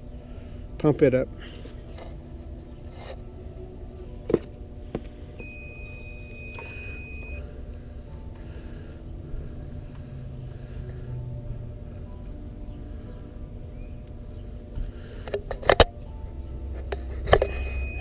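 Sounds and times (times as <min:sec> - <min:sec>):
high electronic beep: 0:05.4 - 0:07.4, 0:17.5 - 0:18.0.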